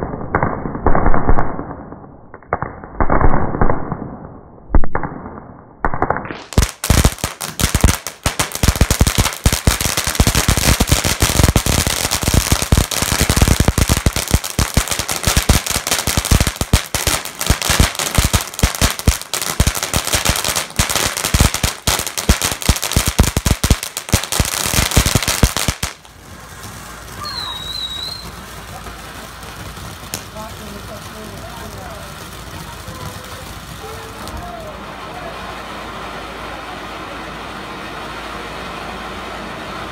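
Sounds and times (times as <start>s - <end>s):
firecrackers banging: 4.8s - 39.9s.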